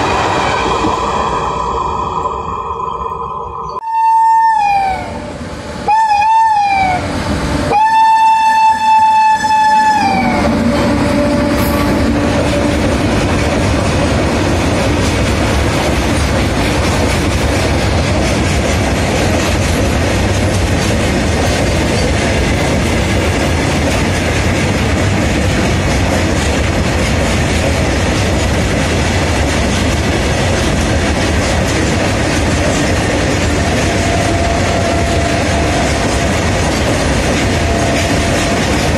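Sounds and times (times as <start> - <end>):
freight train rolling past: 0.0 - 38.9
locomotive horn blasts: 5.9 - 7.1, 7.7 - 12.2.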